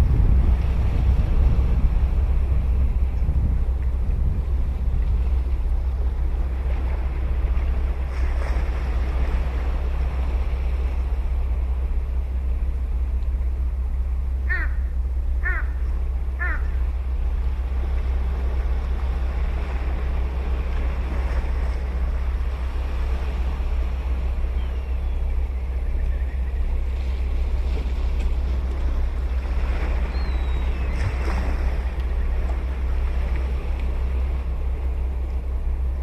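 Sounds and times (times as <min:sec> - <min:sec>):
ocean waves washing on beach: 0:00.0 - 0:36.0
wind rumble on microphone: 0:00.0 - 0:36.0
crow calling: 0:14.5 - 0:16.8.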